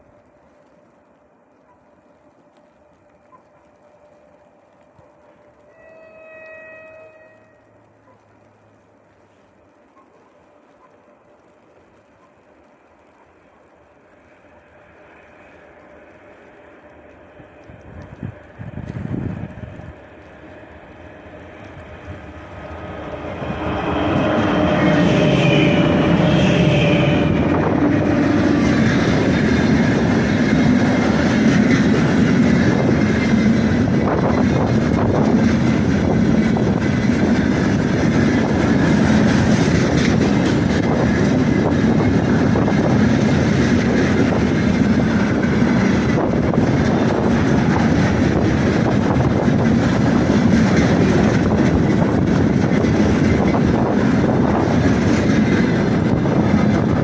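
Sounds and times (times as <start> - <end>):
train wheels running on rails: 14.1 - 57.0.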